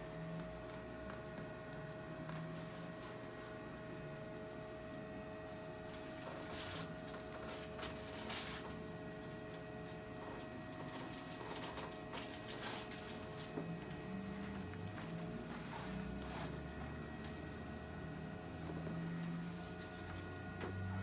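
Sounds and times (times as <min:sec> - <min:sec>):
rustles and clicks of handling: 0:05.9 - 0:17.7.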